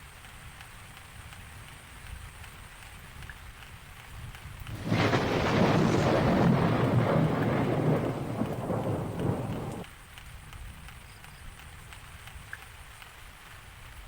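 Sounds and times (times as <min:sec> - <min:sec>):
light steady rain: 0:00.0 - 0:14.0
rolling thunderclap: 0:04.6 - 0:09.8.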